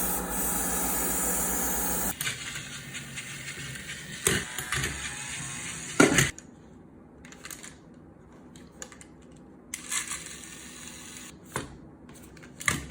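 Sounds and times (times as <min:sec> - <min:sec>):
hiss: 0:00.0 - 0:02.1.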